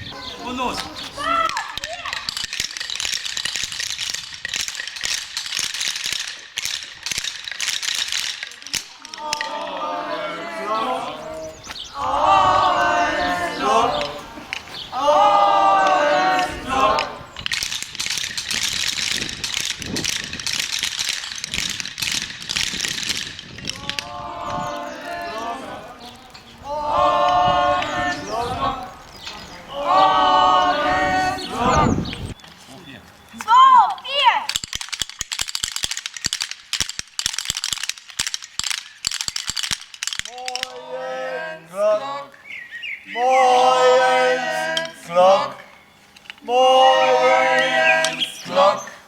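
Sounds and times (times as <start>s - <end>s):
wooden clappers rattling: 0.7s - 10.6s, 13.0s - 14.8s, 15.6s - 29.5s, 32.4s - 40.9s, 44.4s - 46.5s
children chanting: 8.7s - 17.4s, 23.7s - 32.2s, 40.3s - 42.4s, 43.0s - 45.7s, 46.4s - 49.0s.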